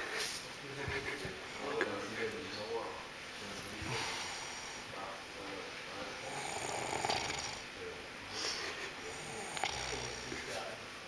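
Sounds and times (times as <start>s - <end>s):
man snoring: 3.8s - 4.9s, 6.2s - 7.6s, 9.0s - 10.4s.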